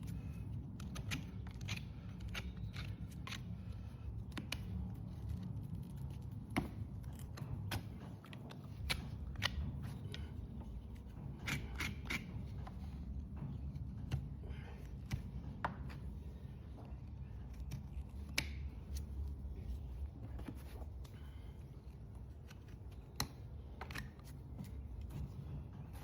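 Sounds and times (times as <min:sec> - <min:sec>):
tools scraping and cutting hoof: 0:00.0 - 0:16.4, 0:20.2 - 0:26.0
sharp snips and clicks: 0:00.8 - 0:07.9, 0:17.6 - 0:19.0.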